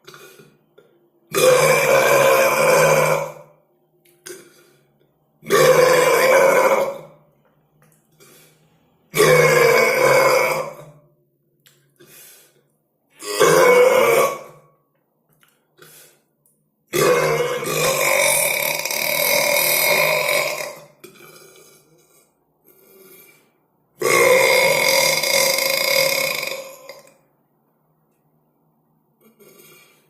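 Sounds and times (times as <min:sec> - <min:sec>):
person burping loudly: 0:00.0 - 0:03.6, 0:04.2 - 0:07.2, 0:09.1 - 0:11.1, 0:13.1 - 0:14.8, 0:16.9 - 0:27.2, 0:29.2 - 0:30.0.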